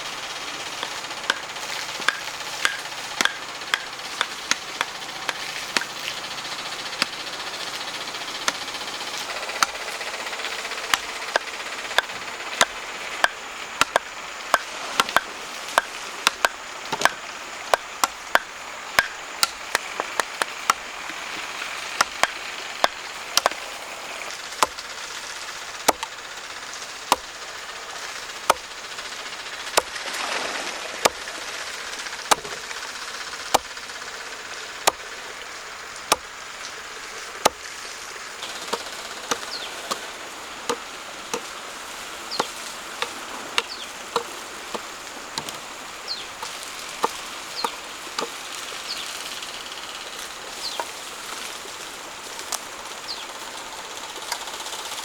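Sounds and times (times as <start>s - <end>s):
steady hiss: 0.0s - 55.0s
wood being chopped: 0.7s - 23.7s, 24.4s - 24.9s, 25.8s - 26.2s, 27.0s - 27.4s, 28.4s - 28.9s, 29.6s - 30.3s, 31.0s - 31.3s, 32.1s - 32.8s, 33.5s - 33.8s, 34.8s - 35.1s, 36.0s - 36.3s, 37.4s - 37.7s, 38.4s - 49.0s, 50.1s - 51.4s.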